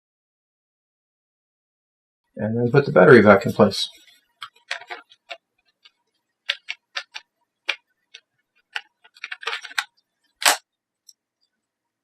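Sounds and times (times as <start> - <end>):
plastic clicks and knocks: 4.4 - 10.6
battery snapping into place: 9.2 - 10.6.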